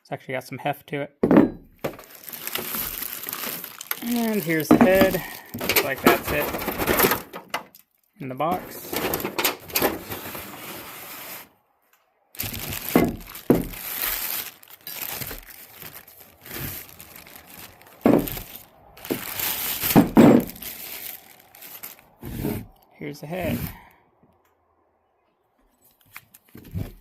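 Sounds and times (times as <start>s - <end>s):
packaging crinkling and rustling: 1.8s - 11.5s, 12.4s - 22.8s, 25.9s - 27.0s.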